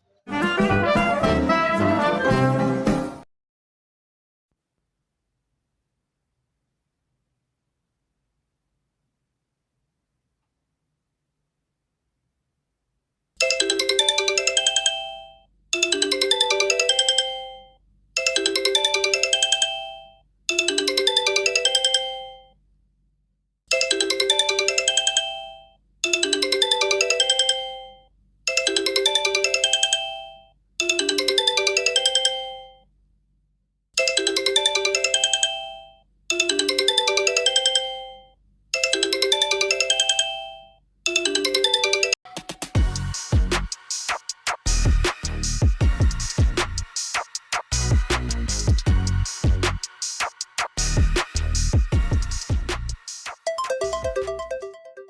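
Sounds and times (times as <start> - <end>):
phone ringtone: 13.4 - 22.6, 23.7 - 32.9, 34.0 - 42.4, 53.5 - 55.0.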